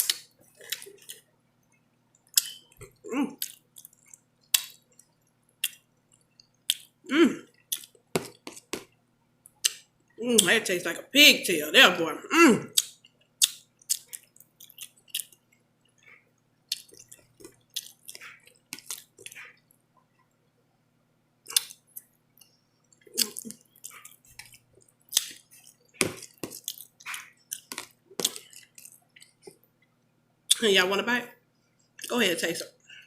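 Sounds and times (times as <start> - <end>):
wet mouth smacks and chewing: 16.7 - 19.6, 21.5 - 29.6.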